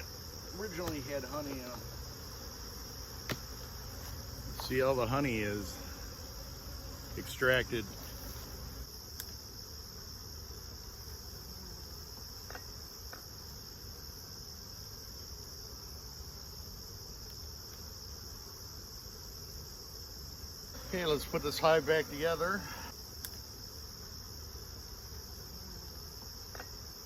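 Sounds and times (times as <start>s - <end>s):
high-pitched insect trill: 0.0s - 27.0s.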